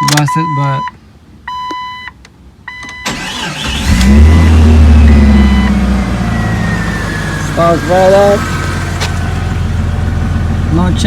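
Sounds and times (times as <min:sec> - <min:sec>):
car engine idling: 0:03.1 - 0:11.0.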